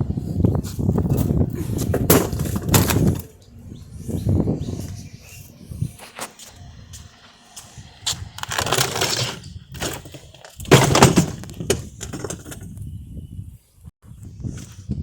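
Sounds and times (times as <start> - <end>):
loud crashes of breaking material: 10.7 - 11.5.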